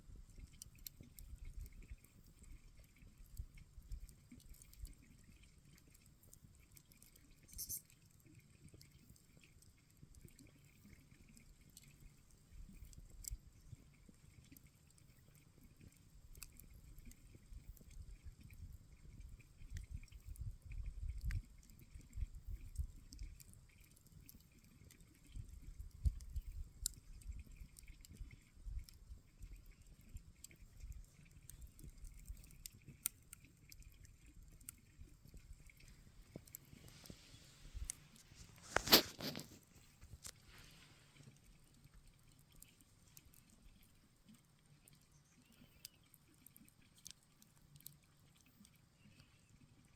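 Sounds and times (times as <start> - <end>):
campfire crackling and popping: 30.5 - 40.6.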